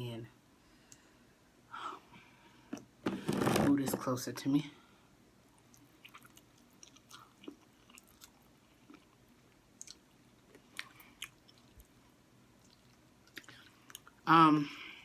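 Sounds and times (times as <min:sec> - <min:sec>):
faint chewing of noodles: 0:05.5 - 0:14.9.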